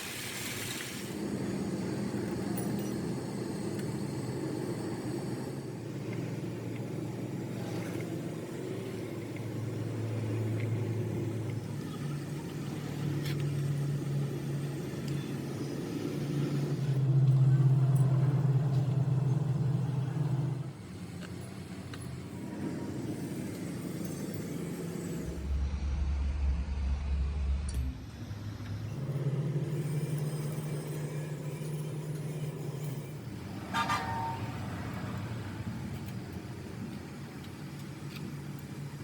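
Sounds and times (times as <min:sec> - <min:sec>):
vehicle engines humming: 0:01.0 - 0:39.0
car horn toot: 0:33.6 - 0:34.8.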